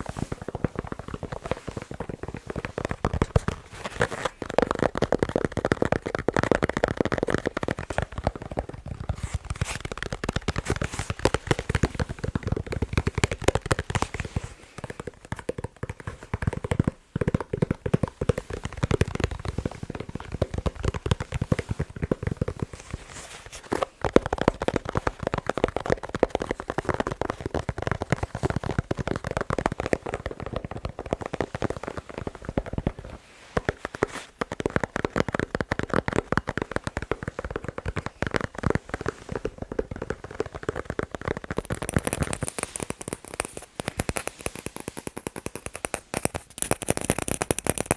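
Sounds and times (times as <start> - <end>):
rapid tapping on a ball: 0.0 - 47.9.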